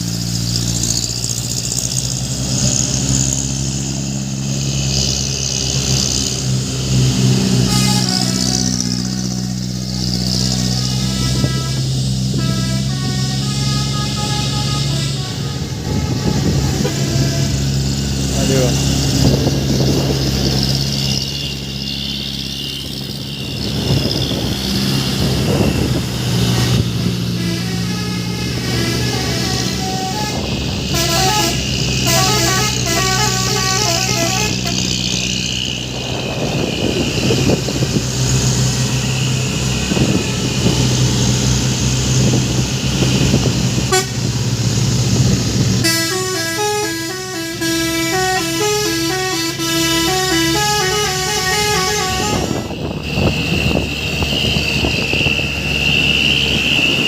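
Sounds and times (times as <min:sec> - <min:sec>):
truck engine running: 0:00.0 - 0:57.0
multi-tone horn melody: 0:07.4 - 0:18.8, 0:25.6 - 0:35.3, 0:43.8 - 0:44.4, 0:45.7 - 0:53.3
short horn blip: 0:07.6 - 0:09.2, 0:26.5 - 0:34.9, 0:43.9 - 0:44.3, 0:45.8 - 0:53.4.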